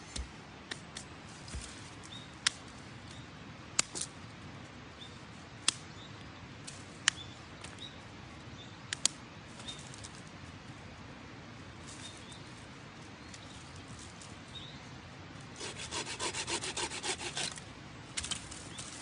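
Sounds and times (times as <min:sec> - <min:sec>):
sharp dry cracks and snaps: 0:00.1 - 0:01.6, 0:02.4 - 0:04.1, 0:05.6 - 0:05.9, 0:06.6 - 0:07.8, 0:08.8 - 0:10.2
small birds chirping: 0:01.9 - 0:03.4, 0:04.9 - 0:10.1, 0:11.8 - 0:15.6.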